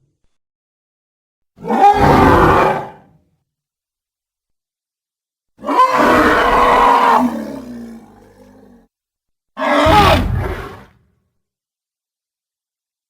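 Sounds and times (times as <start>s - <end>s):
dinosaur roar: 1.6s - 3.1s, 5.6s - 8.9s, 9.6s - 11.0s.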